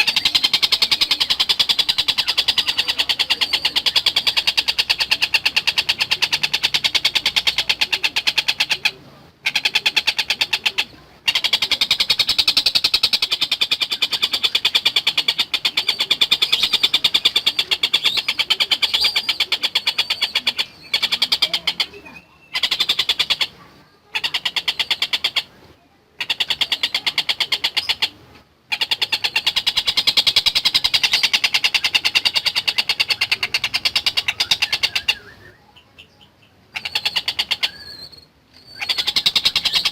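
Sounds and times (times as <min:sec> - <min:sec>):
bird singing a rattling trill: 0:29.1 - 0:39.9.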